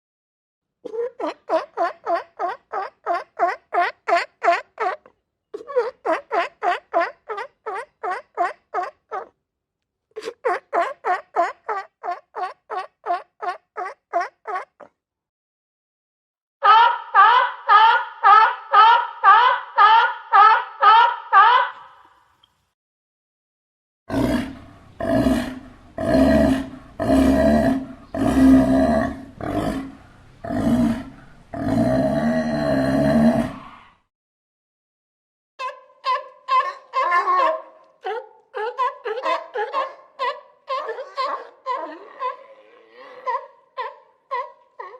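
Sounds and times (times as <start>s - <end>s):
sea lion barking: 35.6s - 44.9s.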